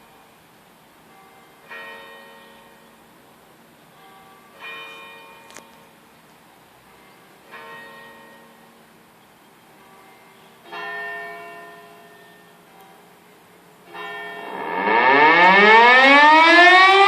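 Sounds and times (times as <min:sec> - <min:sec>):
church bell tolling: 0:01.0 - 0:03.1, 0:03.9 - 0:05.9, 0:06.8 - 0:08.8, 0:09.7 - 0:15.0.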